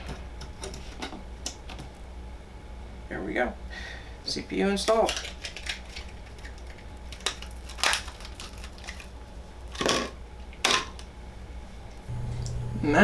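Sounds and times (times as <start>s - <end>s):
low electrical hum: 0.0s - 13.0s
plastic packaging crinkling: 5.0s - 9.8s.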